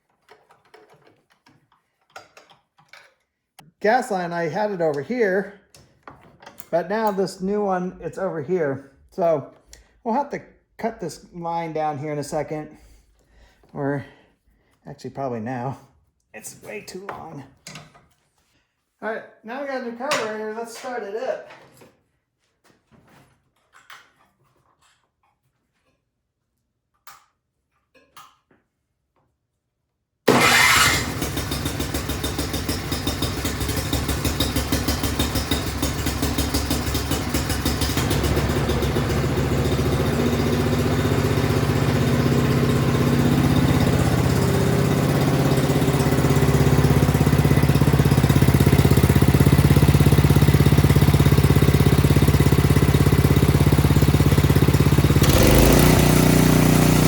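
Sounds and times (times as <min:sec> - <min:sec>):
small gasoline engine running: 0:30.3 - 0:57.0.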